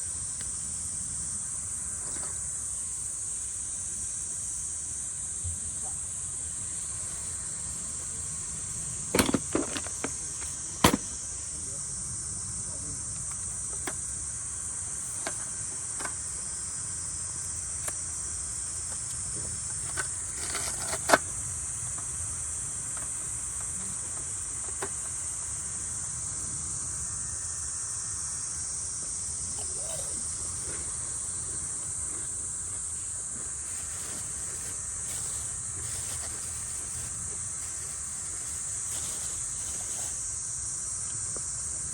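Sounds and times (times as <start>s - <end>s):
insects chorus: 0.0s - 41.9s
sharp knocks and clatters: 9.1s - 11.2s.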